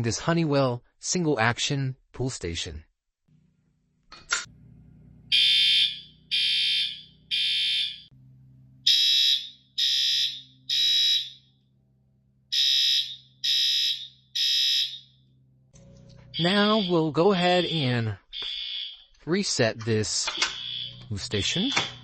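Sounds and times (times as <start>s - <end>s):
fire alarm horn beeps: 5.3s - 8.1s, 8.8s - 11.4s, 12.5s - 15.2s, 16.3s - 19.0s, 20.5s - 22.0s.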